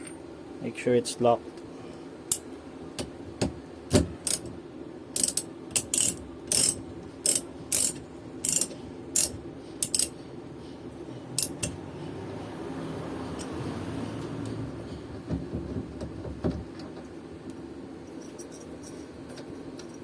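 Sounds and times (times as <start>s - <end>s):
ratchet wrench clicking: 4.2s - 4.5s, 5.2s - 10.1s, 11.4s - 11.8s.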